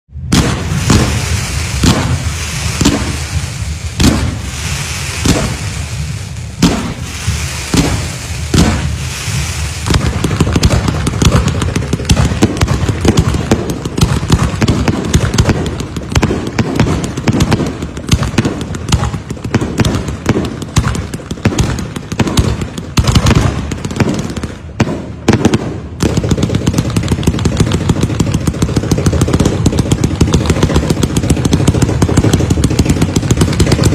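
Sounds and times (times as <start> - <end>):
firecrackers banging: 0.1 - 33.9
rapid run of firecracker cracks: 0.2 - 33.9
hissing crackle: 0.3 - 24.6.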